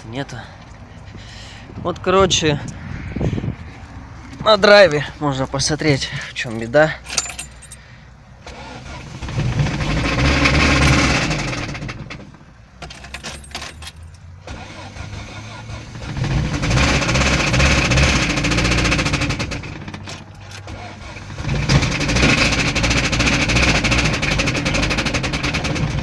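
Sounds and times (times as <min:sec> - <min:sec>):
car engine revving: 0:08.4 - 0:12.3, 0:14.4 - 0:20.0, 0:20.6 - 0:26.0
engine knock: 0:16.2 - 0:20.0, 0:21.4 - 0:26.0.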